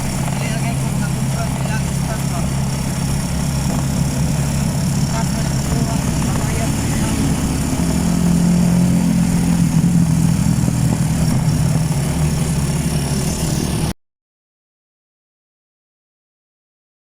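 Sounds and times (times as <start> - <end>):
vehicle engine humming: 0.0 - 14.0.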